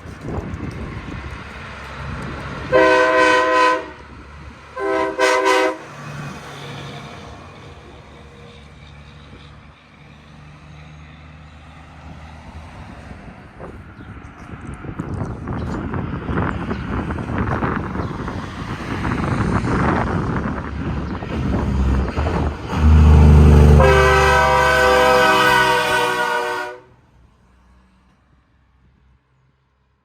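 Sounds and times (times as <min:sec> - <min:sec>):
low rumble of train: 0:00.0 - 0:30.0
locomotive air horn blasts: 0:02.7 - 0:04.0, 0:04.8 - 0:06.0, 0:22.7 - 0:27.0.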